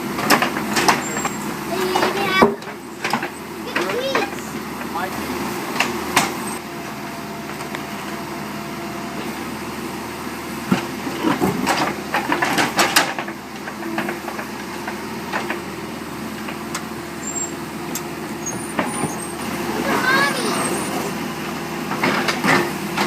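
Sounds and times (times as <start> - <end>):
backhoe engine running: 0.0 - 23.0
sharp clanks and knocks: 0.2 - 5.0, 5.7 - 6.6, 10.6 - 15.7, 16.3 - 19.4, 21.9 - 23.0.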